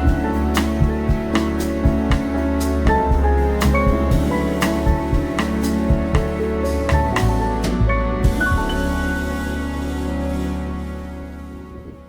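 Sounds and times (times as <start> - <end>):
background music with drum beat: 0.0 - 9.4.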